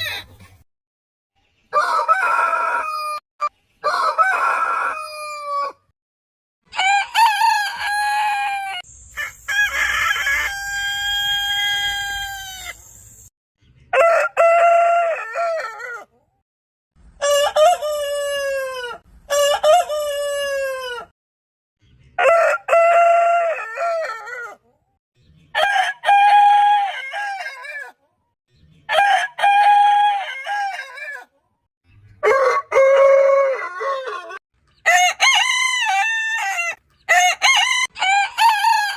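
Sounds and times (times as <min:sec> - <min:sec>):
rooster crowing: 0:01.7 - 0:03.2, 0:03.8 - 0:05.8, 0:06.7 - 0:12.8, 0:13.9 - 0:16.1, 0:32.2 - 0:38.9.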